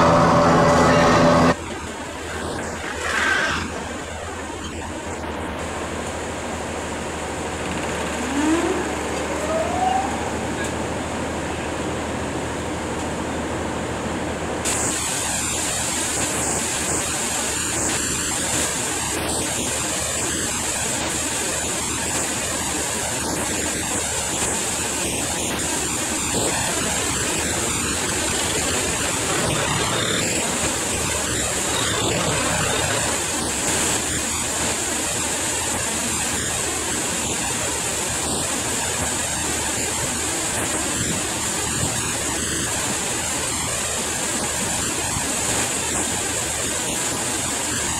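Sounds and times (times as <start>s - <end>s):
low engine hum: 0.0s - 3.0s
farm machinery rushing drone: 0.0s - 47.9s.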